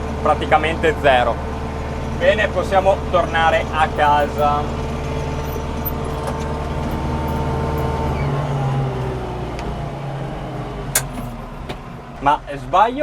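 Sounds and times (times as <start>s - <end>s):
tractor engine running: 0.0s - 13.0s.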